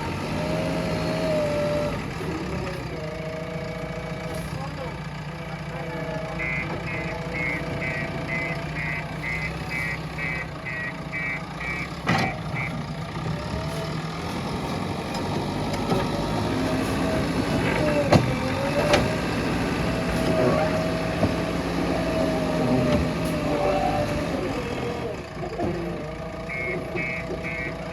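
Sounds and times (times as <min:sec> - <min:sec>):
backhoe diesel engine running: 0:00.0 - 0:27.9
reversing alarm beeping: 0:06.4 - 0:12.9, 0:26.4 - 0:27.9.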